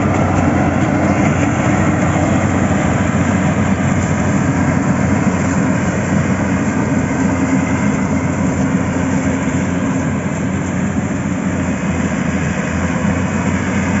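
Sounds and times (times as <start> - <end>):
vehicle engine noise: 0.0 - 14.0.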